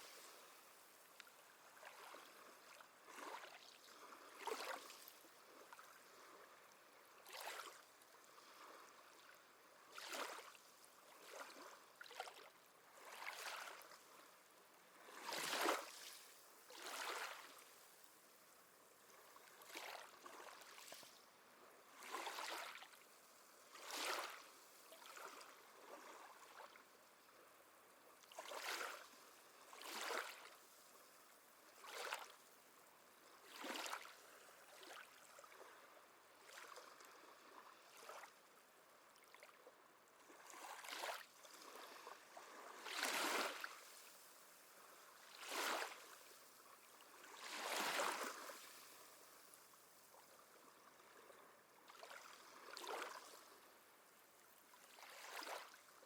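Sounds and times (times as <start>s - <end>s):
faint hiss: 0.0s - 1.6s
small waves lapping on shore: 0.0s - 56.0s.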